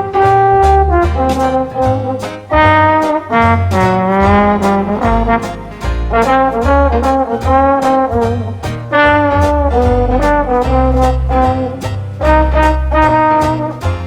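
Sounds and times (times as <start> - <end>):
upbeat jazzy brass tune: 0.0 - 14.0.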